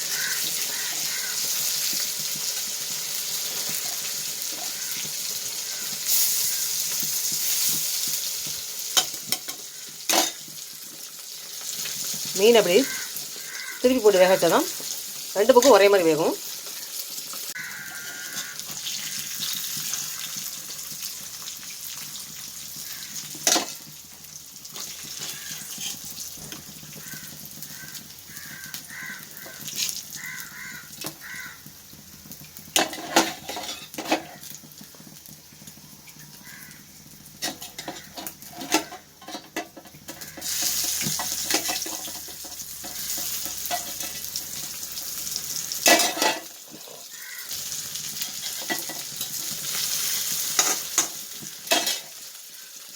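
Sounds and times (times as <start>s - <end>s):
fish sizzling in a pan: 0.0s - 52.9s
spatula scraping a pan: 17.5s - 20.6s, 24.7s - 28.7s, 29.4s - 30.0s, 32.8s - 34.5s, 37.4s - 47.4s, 48.0s - 52.2s.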